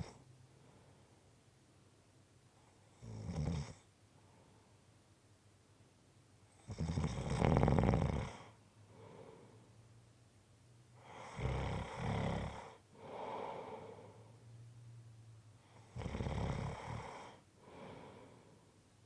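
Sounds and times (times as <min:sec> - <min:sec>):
soft breath: 0:00.0 - 0:01.2, 0:08.8 - 0:09.8, 0:12.8 - 0:14.5, 0:17.0 - 0:18.8
person snoring: 0:11.2 - 0:13.8.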